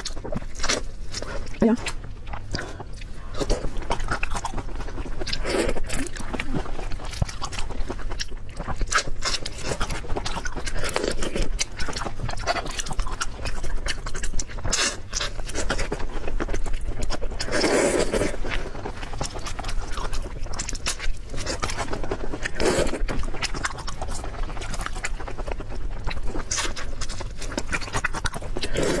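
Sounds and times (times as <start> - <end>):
chewing and crunching seafood: 0.0 - 29.0.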